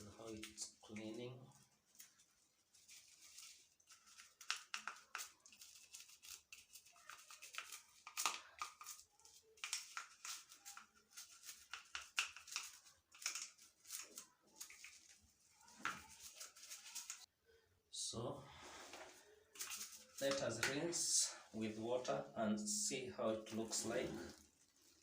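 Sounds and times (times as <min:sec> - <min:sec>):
toothbrush scrubbing plastic: 0:00.0 - 0:17.3, 0:19.5 - 0:22.1, 0:23.3 - 0:25.0.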